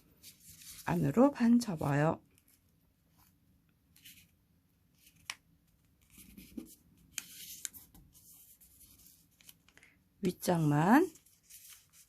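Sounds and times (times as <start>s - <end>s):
paper rustling: 0.1s - 3.4s, 11.0s - 12.0s
paper being folded and creased: 0.2s - 3.4s, 4.9s - 9.8s, 11.0s - 12.0s.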